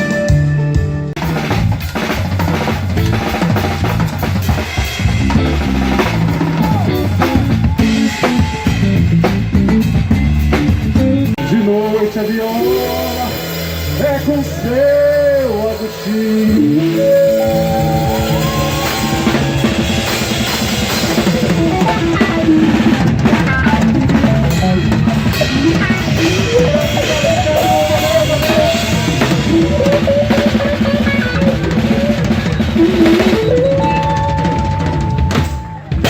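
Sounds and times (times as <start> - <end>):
drum kit beat: 0.0 - 36.0
melodic lead line: 11.2 - 35.3.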